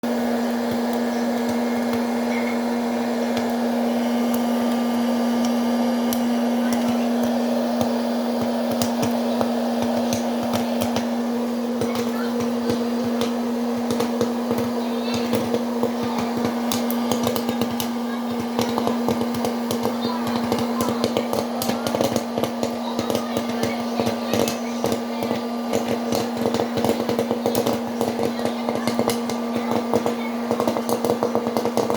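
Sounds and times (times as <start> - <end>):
popcorn kernels popping: 0.0 - 31.9
popcorn maker motor hum: 0.0 - 31.9.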